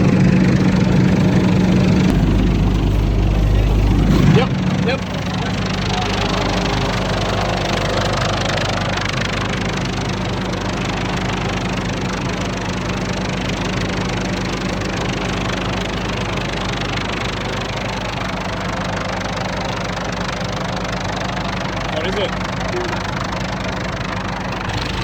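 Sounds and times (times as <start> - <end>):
machinery hum: 0.0 - 20.0, 22.8 - 25.0
heavy rain: 24.6 - 25.0.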